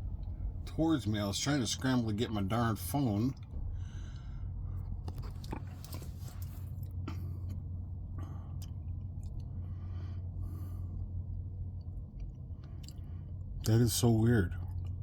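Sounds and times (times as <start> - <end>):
truck engine idling: 0.0 - 15.0
short rustles: 5.1 - 6.8.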